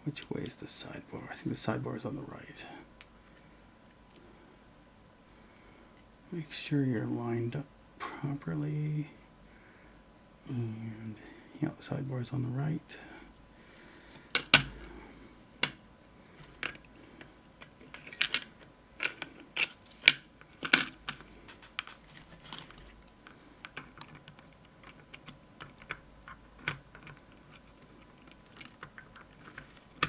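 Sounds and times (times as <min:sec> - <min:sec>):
metal parts and tools knocking: 0:14.4 - 0:14.9, 0:20.0 - 0:22.7.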